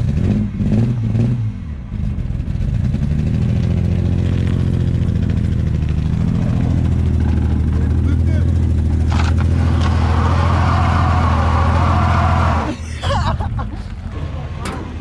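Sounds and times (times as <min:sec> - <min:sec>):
car engine revving hard: 0:04.0 - 0:12.8.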